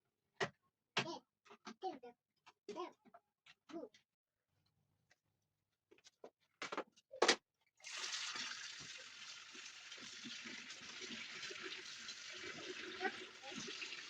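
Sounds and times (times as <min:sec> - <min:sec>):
water running: 0:07.8 - 0:14.0.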